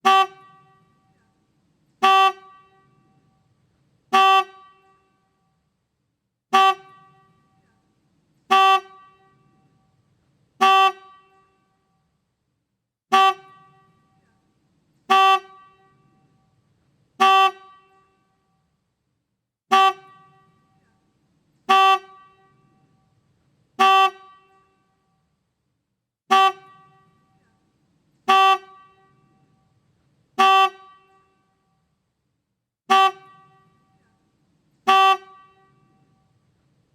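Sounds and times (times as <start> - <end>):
motorcycle horn honks: 0.0 - 1.2, 2.0 - 3.5, 4.1 - 5.6, 6.5 - 7.9, 8.5 - 10.0, 10.6 - 12.1, 13.1 - 14.5, 15.1 - 16.6, 17.2 - 18.7, 19.7 - 21.1, 21.7 - 23.2, 23.8 - 25.2, 26.3 - 27.6, 28.2 - 29.8, 30.4 - 31.9, 32.9 - 34.2, 34.9 - 36.4.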